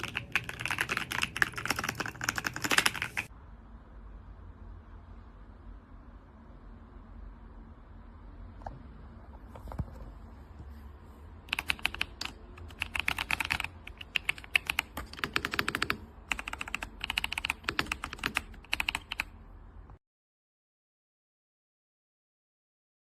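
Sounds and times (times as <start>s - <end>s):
mechanical keyboard typing: 0.0s - 3.3s, 11.5s - 19.3s.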